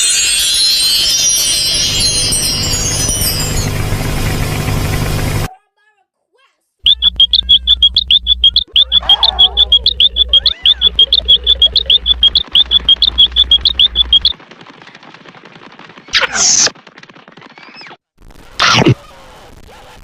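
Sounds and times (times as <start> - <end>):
high-pitched cartoon chirps: 0.0 - 3.8, 6.9 - 14.3
low hum: 6.9 - 14.3.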